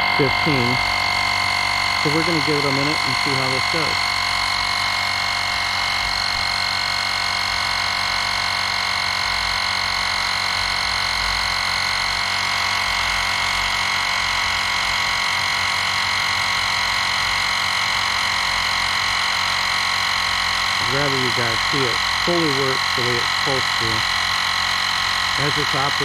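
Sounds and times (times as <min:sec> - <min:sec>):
air compressor high whine: 0:00.0 - 0:26.0.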